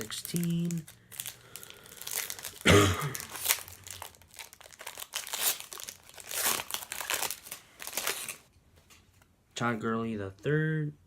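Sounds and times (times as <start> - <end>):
foil wrapper tearing and crinkling: 0.0 - 8.5.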